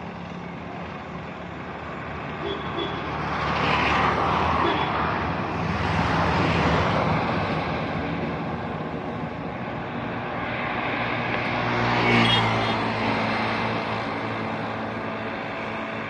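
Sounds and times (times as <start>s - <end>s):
traffic noise: 0.0s - 16.0s
vehicle engine hum passing: 0.0s - 16.0s.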